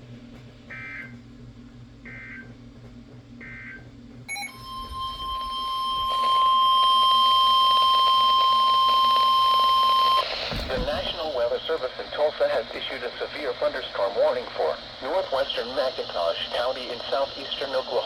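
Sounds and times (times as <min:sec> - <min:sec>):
steady warning alarm tone: 0:00.7 - 0:01.2, 0:02.0 - 0:02.6, 0:03.4 - 0:12.2.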